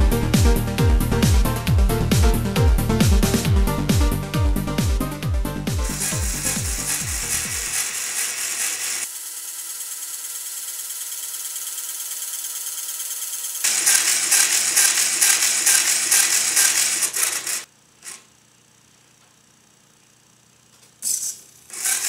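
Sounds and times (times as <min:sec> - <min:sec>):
toy motors driving pumps rattling: 0:05.8 - 0:18.2, 0:21.0 - 0:22.0.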